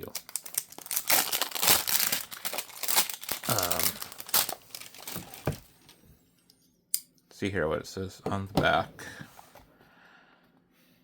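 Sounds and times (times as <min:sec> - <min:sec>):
packaging crinkling: 0:00.0 - 0:05.9.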